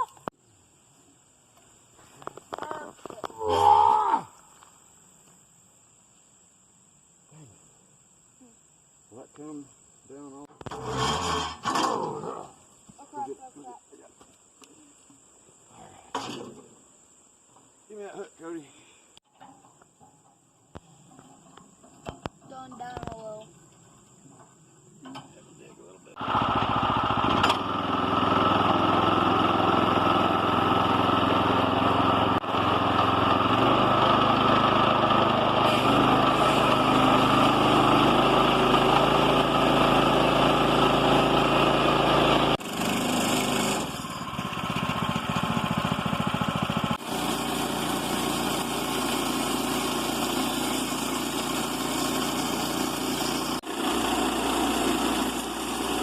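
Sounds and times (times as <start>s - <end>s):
small gasoline engine running: 10.7s - 12.1s, 26.2s - 56.0s.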